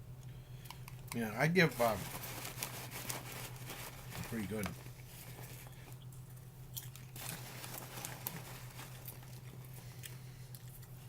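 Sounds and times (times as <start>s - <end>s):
popcorn crunching: 0.6s - 11.0s
paper bag crinkling: 1.6s - 5.7s, 7.0s - 9.8s.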